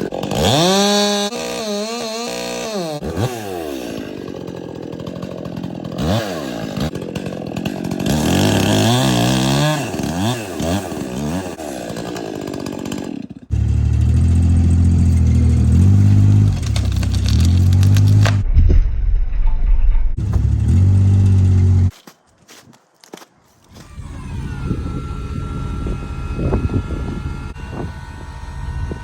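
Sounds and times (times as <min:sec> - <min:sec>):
chainsaw revving while cutting: 0:00.0 - 0:18.4, 0:20.2 - 0:21.9
low engine rumble: 0:13.5 - 0:21.9.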